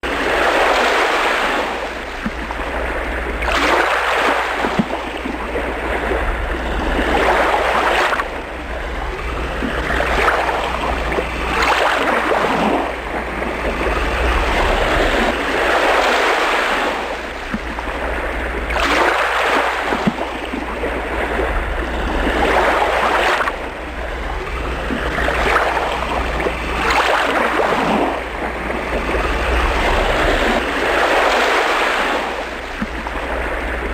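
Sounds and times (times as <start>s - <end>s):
ocean waves breaking: 0.0s - 33.9s
steady low rumble: 4.9s - 18.8s, 19.8s - 33.9s.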